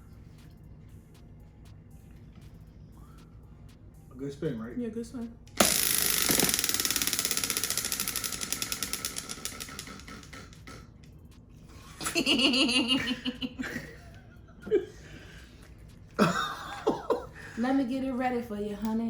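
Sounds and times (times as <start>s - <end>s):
prize wheel clicking: 5.5s - 11.3s.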